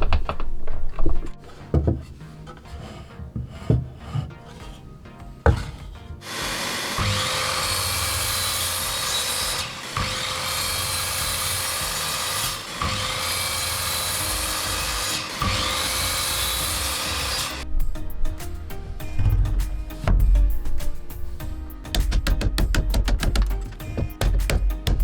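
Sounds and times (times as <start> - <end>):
electric power tool cutting wood: 5.4 - 17.7.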